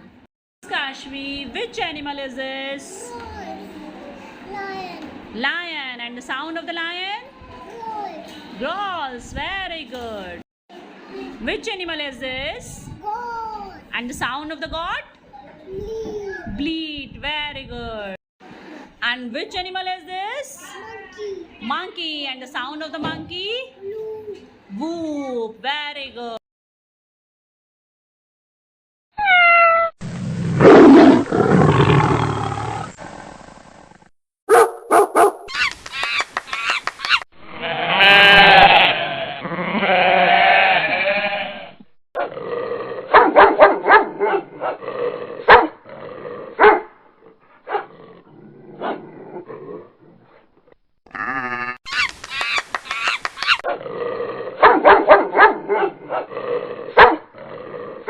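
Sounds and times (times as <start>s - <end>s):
long rough animal call: 30.4s - 33.9s, 37.5s - 43.1s, 51.1s - 51.8s
dog barking: 34.5s - 35.5s, 43.1s - 44.8s, 45.5s - 45.8s, 46.6s - 46.9s, 47.6s - 47.9s, 48.8s - 49.0s, 54.6s - 56.3s, 57.0s - 57.2s.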